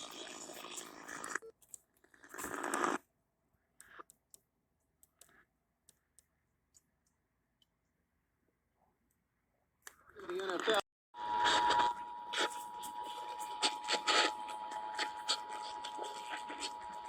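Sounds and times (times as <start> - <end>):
faint clicks: 3.8 - 7.7
faint steady hum: 11.2 - 17.0.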